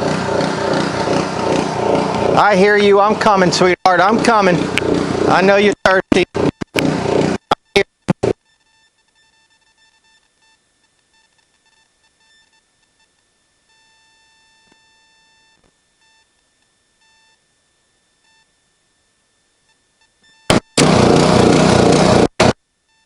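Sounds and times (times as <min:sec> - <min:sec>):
faint electronic beeping: 0:05.3 - 0:18.6, 0:19.6 - 0:20.7, 0:22.7 - 0:23.0.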